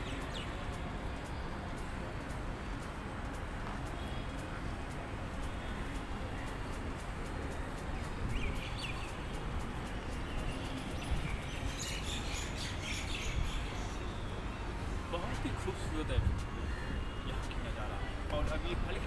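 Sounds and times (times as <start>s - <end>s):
small birds chirping: 0.0s - 1.4s, 5.4s - 15.6s
low rumble of breeze: 4.4s - 19.0s.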